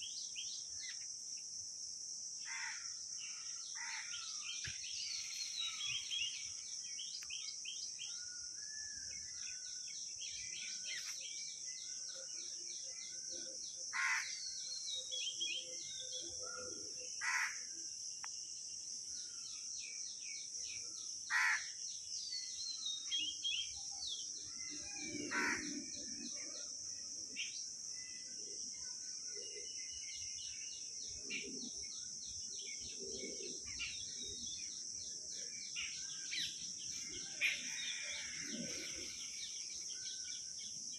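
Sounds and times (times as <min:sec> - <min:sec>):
steady high-pitched hiss: 0:00.0 - 0:40.9
birds chirping: 0:03.2 - 0:08.1, 0:29.4 - 0:40.9.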